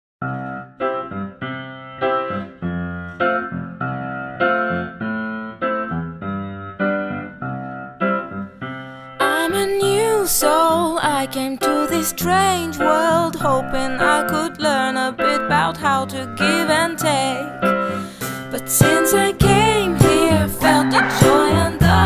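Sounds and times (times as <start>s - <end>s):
piano chords: 0.2s - 22.0s
person singing: 9.2s - 22.0s.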